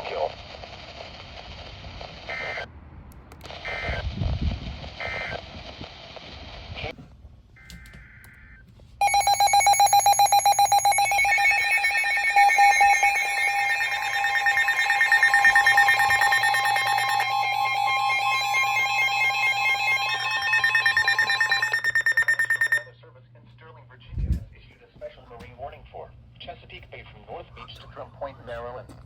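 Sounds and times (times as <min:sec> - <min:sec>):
buzzing data burst: 0:09.0 - 0:22.8
two-tone emergency alert signal: 0:09.0 - 0:22.9.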